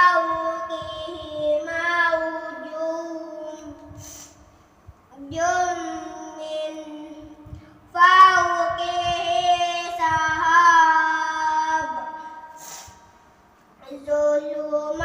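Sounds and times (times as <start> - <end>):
person chanting recitation: 5.2 - 12.8, 13.8 - 15.0.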